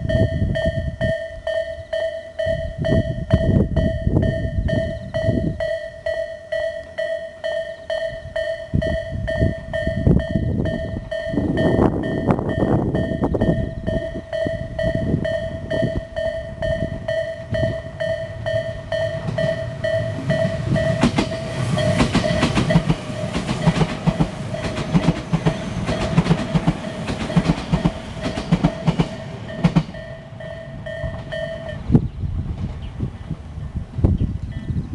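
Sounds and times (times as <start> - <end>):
railway crossing bell dinging: 0.0 - 32.0, 34.5 - 34.8
train wheels clicking over joints: 12.9 - 31.8.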